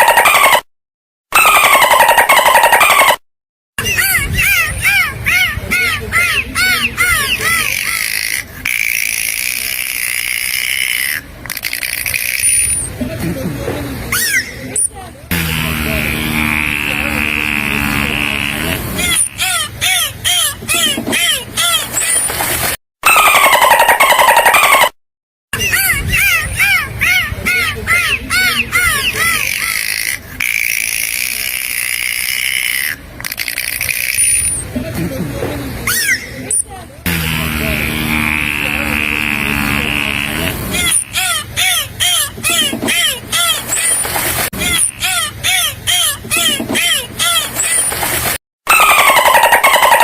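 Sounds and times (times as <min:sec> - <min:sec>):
dolphin whistling: 0:48.7 - 0:50.0.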